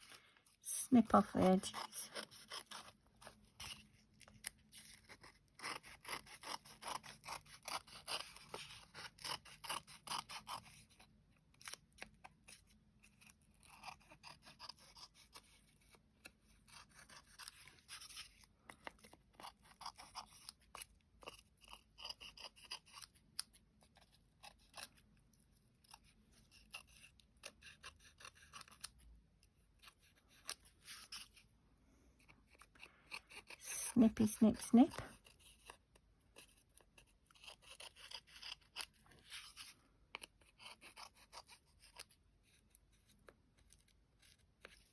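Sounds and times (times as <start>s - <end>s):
scissors snipping paper: 1.2s - 25.0s, 25.6s - 29.0s.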